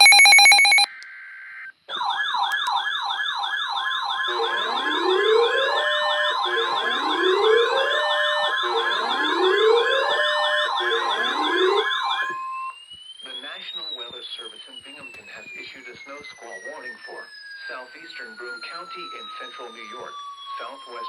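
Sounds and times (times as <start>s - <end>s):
fast yelping siren: 0.0s - 0.9s, 1.9s - 21.0s
slow rising siren: 0.0s - 0.9s, 1.9s - 21.0s
steady siren tone: 0.0s - 21.0s.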